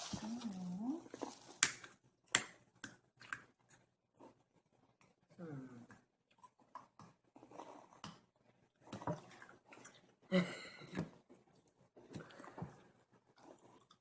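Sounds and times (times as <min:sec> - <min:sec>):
plastic wrapping rustling: 0:00.0 - 0:01.9.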